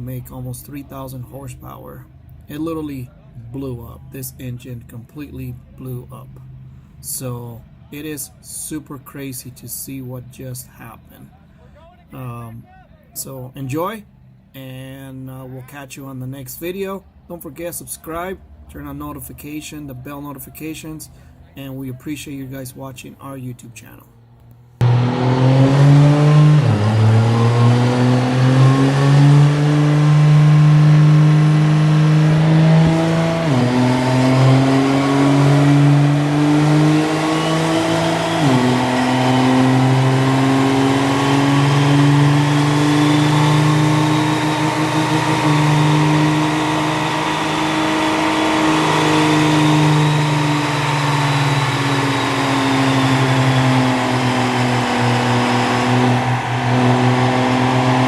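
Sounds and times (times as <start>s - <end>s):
diesel truck engine under load: 24.4s - 58.0s.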